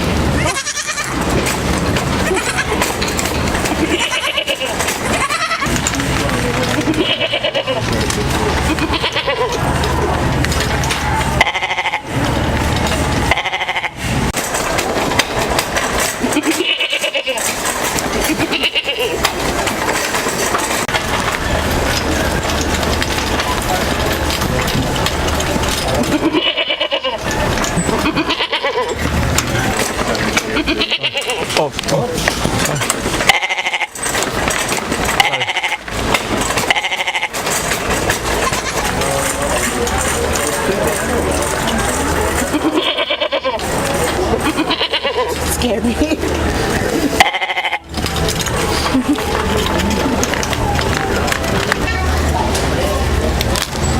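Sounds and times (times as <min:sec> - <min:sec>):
steady background din: 0:00.0 - 0:53.9
goat bleating: 0:00.4 - 0:01.3, 0:02.2 - 0:02.9, 0:03.7 - 0:05.7, 0:06.7 - 0:07.8, 0:08.6 - 0:09.6, 0:11.4 - 0:12.2, 0:13.2 - 0:14.0, 0:16.4 - 0:17.6, 0:18.3 - 0:19.2, 0:26.0 - 0:27.2, 0:28.0 - 0:29.0, 0:30.4 - 0:31.6, 0:33.3 - 0:34.0, 0:35.2 - 0:35.9, 0:36.7 - 0:37.4, 0:38.4 - 0:38.9, 0:42.4 - 0:43.6, 0:44.3 - 0:45.4, 0:47.2 - 0:47.9.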